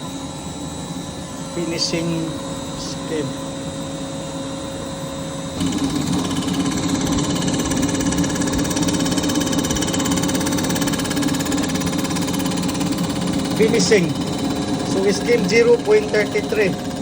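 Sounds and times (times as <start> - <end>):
machine tool cutting metal: 5.6 - 17.0.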